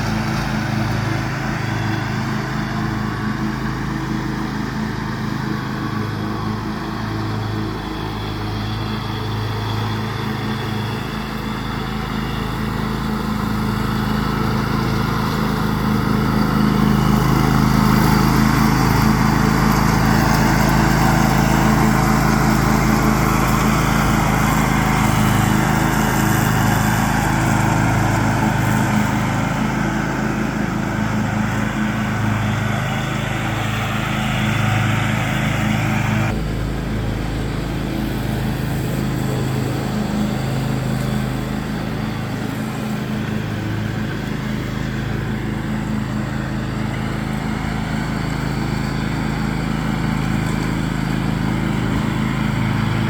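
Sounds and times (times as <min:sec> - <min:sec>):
lawn tractor engine mowing: 0:00.0 - 0:53.0.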